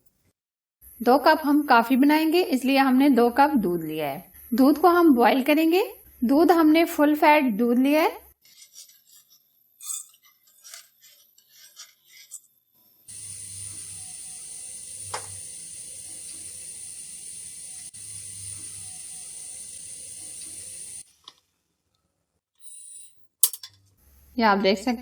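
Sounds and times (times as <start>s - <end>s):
low hum: 13.1s - 21.0s
milk hissing in a pan: 13.1s - 21.0s.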